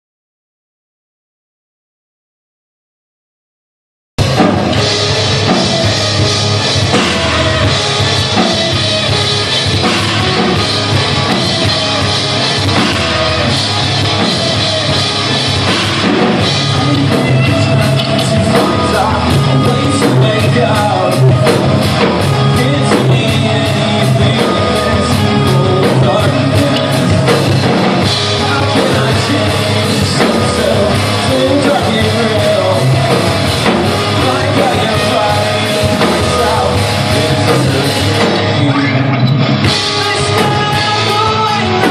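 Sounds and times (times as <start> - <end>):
drum kit: 4.2 - 41.9
rock band playing: 4.2 - 41.9
sung and shouted vocals: 16.6 - 21.6, 22.4 - 41.9.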